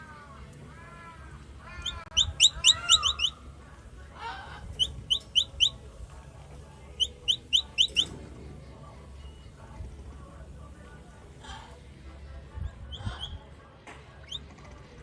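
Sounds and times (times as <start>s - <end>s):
baby capybara chirping: 0.7s - 3.4s, 4.2s - 6.0s, 6.8s - 8.2s, 12.8s - 13.5s, 14.2s - 14.5s
low wavering animal calls: 0.7s - 3.4s, 4.2s - 5.8s, 7.0s - 8.1s.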